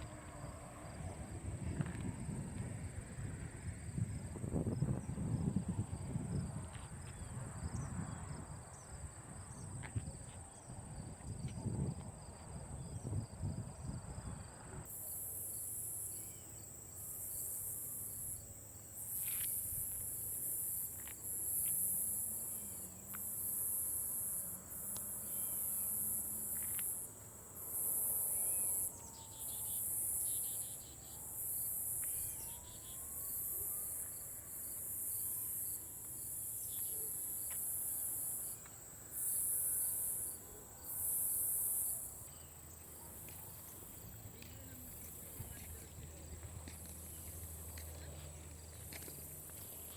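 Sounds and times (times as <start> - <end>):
insect buzzing song: 14.9 - 45.4
insect high-pitched trill: 14.9 - 45.4.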